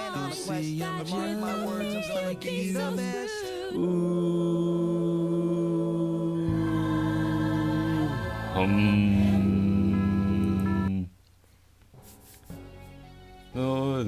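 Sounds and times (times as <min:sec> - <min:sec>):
person singing: 0:00.0 - 0:11.1, 0:13.6 - 0:14.0
low tone: 0:06.5 - 0:11.1.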